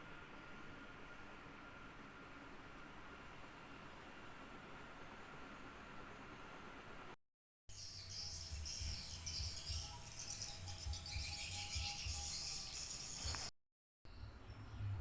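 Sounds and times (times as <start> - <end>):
insects chirping: 7.7 - 13.5.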